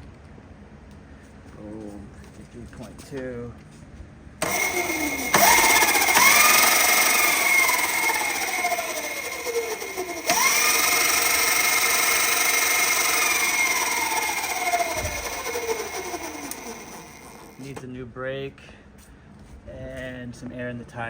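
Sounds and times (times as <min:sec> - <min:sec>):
electric scooter motor whining: 0:04.4 - 0:17.8.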